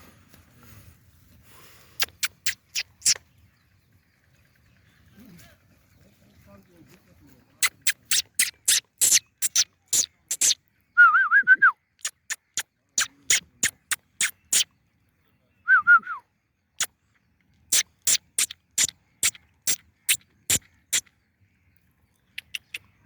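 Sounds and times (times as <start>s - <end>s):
sharp smacking clicks: 2.0s - 3.2s, 7.6s - 10.6s, 12.0s - 14.6s, 17.7s - 21.1s, 22.4s - 22.8s.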